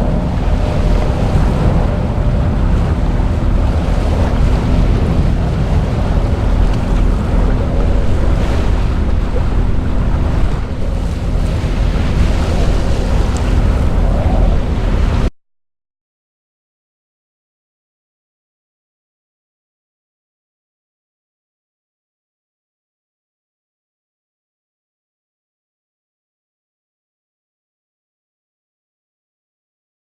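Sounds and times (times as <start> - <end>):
boat engine hum: 0.0 - 15.3
rushing water: 0.0 - 15.3
wind buffeting microphone: 0.0 - 15.3.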